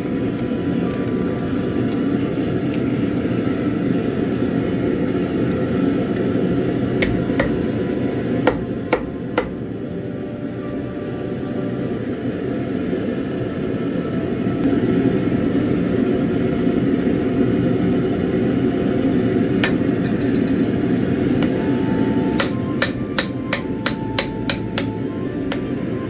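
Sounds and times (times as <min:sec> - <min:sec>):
hammer striking anvil: 0:07.0 - 0:07.7, 0:08.4 - 0:09.7, 0:19.6 - 0:20.5, 0:22.4 - 0:25.1.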